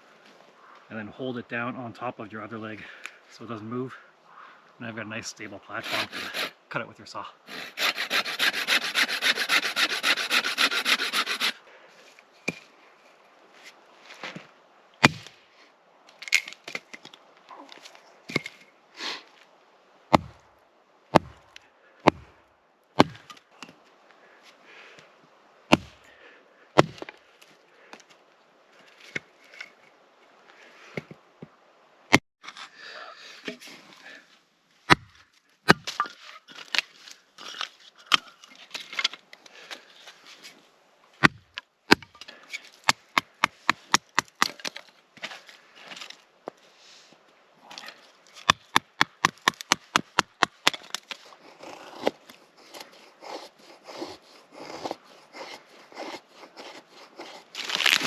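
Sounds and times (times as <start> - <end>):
hand saw cutting branch: 5.7 - 6.6, 7.5 - 11.6, 41.2 - 44.8, 47.9 - 58.0
wood rubbing and scraping: 5.7 - 6.6, 7.5 - 12.7, 47.7 - 58.0
wood knocks and thuds: 26.8 - 27.1.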